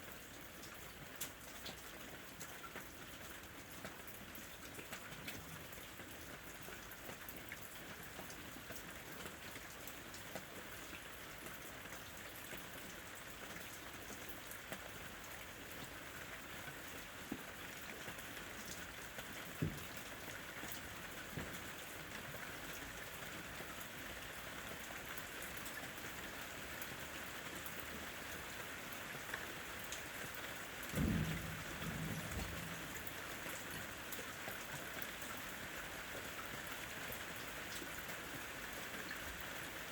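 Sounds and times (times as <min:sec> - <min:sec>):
rain falling: 0:00.0 - 0:39.9
raindrops ticking: 0:29.2 - 0:35.5
sharp low thud: 0:31.0 - 0:32.8.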